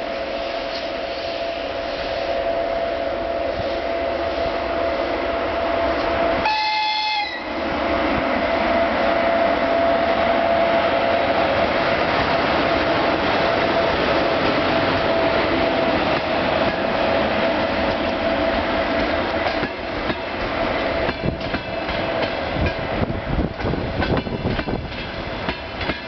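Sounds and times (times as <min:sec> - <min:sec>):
train rolling past with whine: 0:00.0 - 0:26.0
locomotive horn blast: 0:01.2 - 0:07.6.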